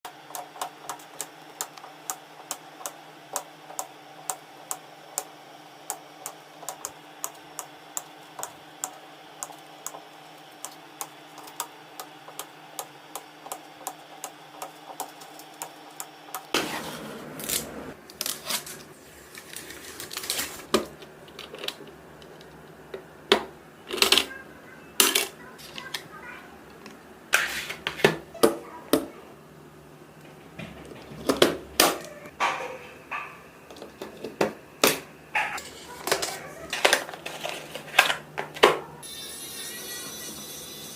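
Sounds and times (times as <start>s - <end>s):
steady hum: 0.1s - 19.3s.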